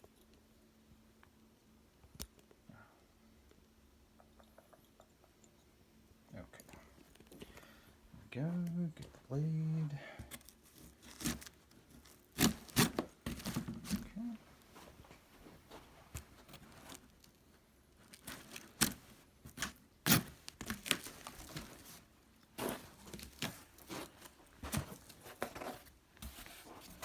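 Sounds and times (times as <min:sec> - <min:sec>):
cardboard tearing and scraping: 0:10.4 - 0:14.1, 0:18.2 - 0:22.0.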